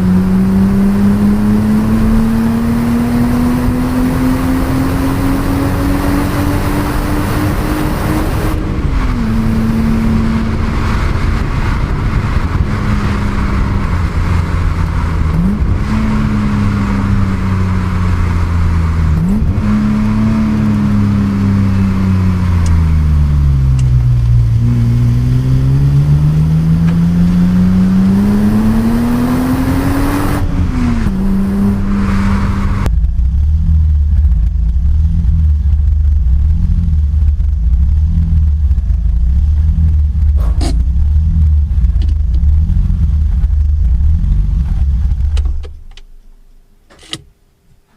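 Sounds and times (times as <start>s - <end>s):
car engine revving through gears: 0.0s - 32.9s.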